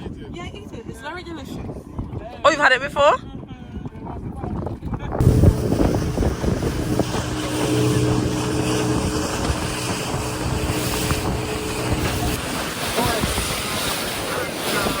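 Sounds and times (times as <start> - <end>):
rush of wind and water: 0.0 - 15.0
motorboat engine running: 5.2 - 15.0.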